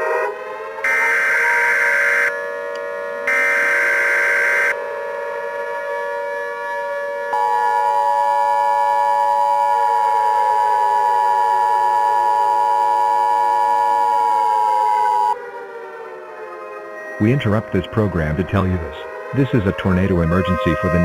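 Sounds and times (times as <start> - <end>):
siren falling in pitch: 0.0 - 21.0.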